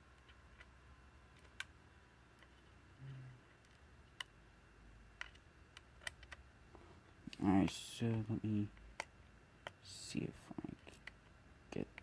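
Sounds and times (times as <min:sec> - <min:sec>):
small plastic clicks: 0:01.3 - 0:02.8, 0:03.5 - 0:04.4, 0:05.1 - 0:06.4, 0:10.7 - 0:12.0.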